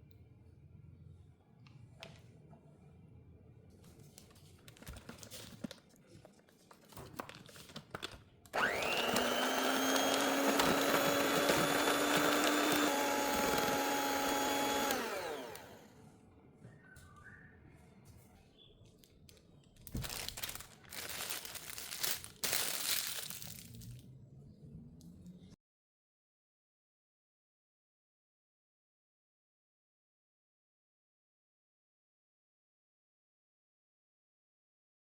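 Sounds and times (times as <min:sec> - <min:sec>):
electric hand mixer whining: 0:08.6 - 0:15.9.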